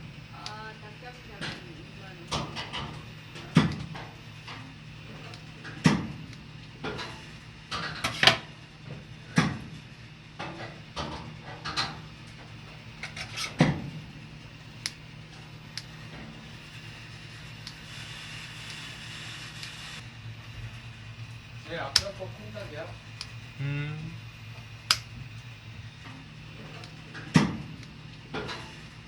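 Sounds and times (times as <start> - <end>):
low hum: 20.0 - 28.4.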